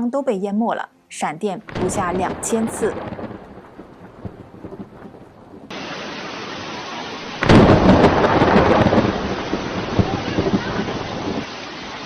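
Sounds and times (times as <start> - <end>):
thunder rumbling: 1.7 - 12.0
heavy rain hissing: 1.8 - 12.0.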